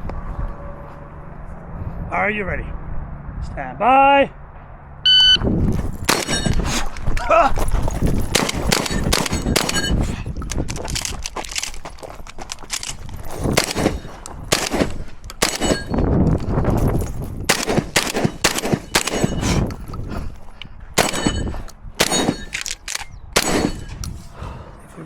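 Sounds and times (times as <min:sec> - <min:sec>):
shotgun shots: 0:06.1 - 0:06.8, 0:08.3 - 0:09.9, 0:13.6 - 0:16.0, 0:17.5 - 0:19.5, 0:21.0 - 0:22.6, 0:23.4 - 0:24.0.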